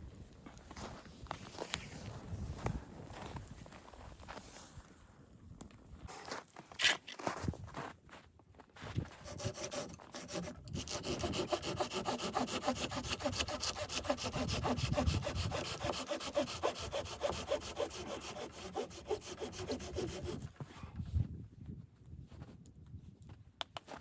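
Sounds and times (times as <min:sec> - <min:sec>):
hand saw cutting wood: 0:09.2 - 0:20.5.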